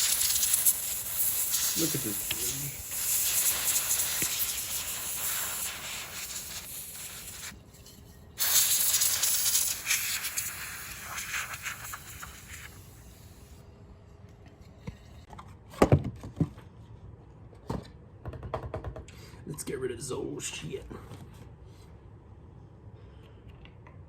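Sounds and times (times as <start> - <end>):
spray hissing: 0.0 - 7.6, 8.4 - 13.6.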